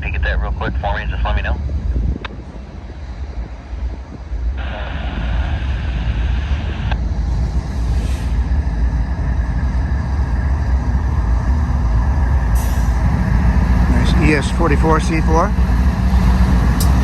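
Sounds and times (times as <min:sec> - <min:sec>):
diesel locomotive rumble: 0:00.0 - 0:17.0
radio static burst: 0:04.6 - 0:07.0.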